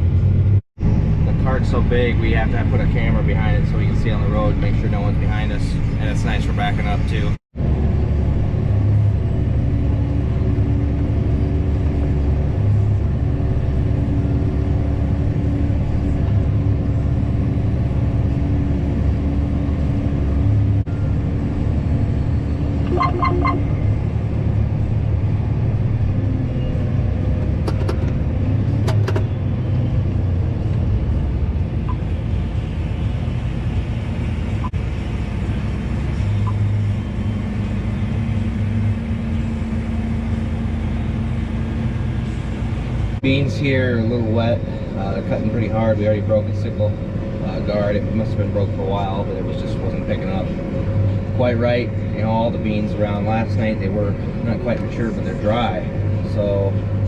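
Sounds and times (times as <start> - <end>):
tractor engine rumble: 0.0 - 57.0
electronic beeps: 22.8 - 23.8, 36.4 - 36.6.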